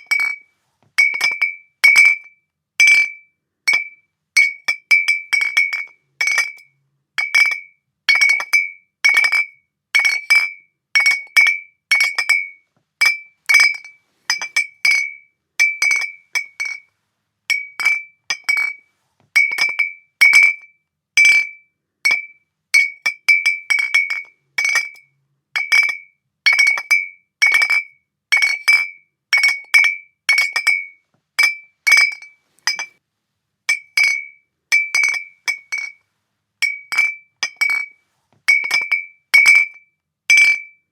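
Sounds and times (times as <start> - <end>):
glass bottles clinking: 0.0 - 0.4, 1.0 - 2.2, 2.9 - 6.6, 8.2 - 16.8, 17.5 - 18.8, 19.4 - 20.6, 22.1 - 25.0, 28.4 - 33.0, 33.7 - 36.0, 36.6 - 37.9, 38.5 - 40.7.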